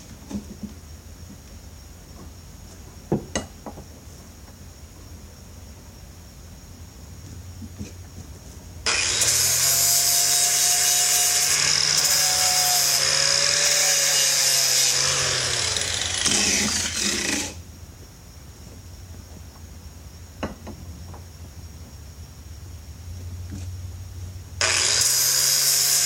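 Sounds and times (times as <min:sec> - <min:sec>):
angle grinder grinding steel: 0:08.9 - 0:17.6, 0:24.6 - 0:26.0.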